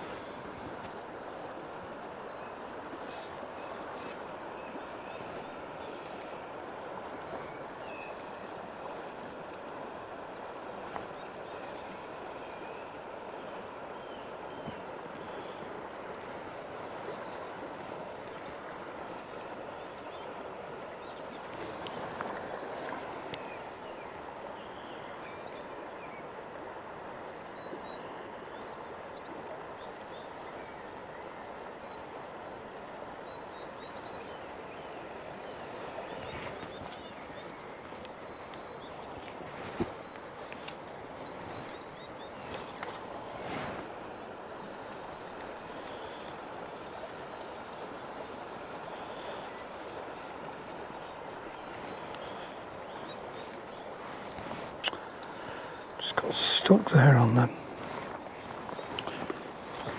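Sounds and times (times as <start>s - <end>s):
small birds chirping: 33.9s - 59.9s
river rushing: 34.9s - 59.9s.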